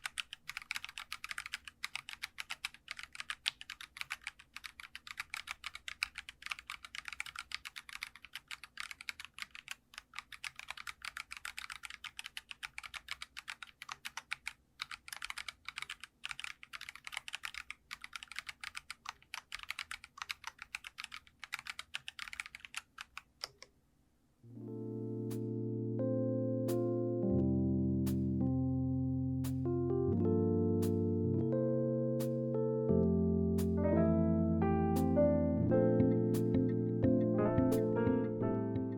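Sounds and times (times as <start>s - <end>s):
mechanical keyboard typing: 0.0s - 23.7s.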